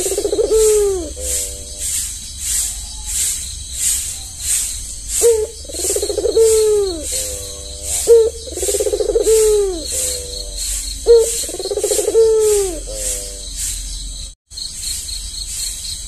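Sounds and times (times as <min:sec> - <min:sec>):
dove cooing: 0:00.0 - 0:02.0, 0:05.1 - 0:13.6.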